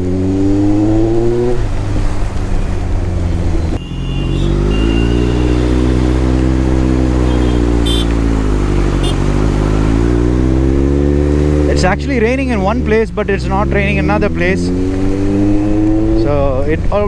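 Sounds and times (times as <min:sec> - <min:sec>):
wind and road noise: 0:00.0 - 0:17.0
motorcycle engine accelerating: 0:03.0 - 0:16.3.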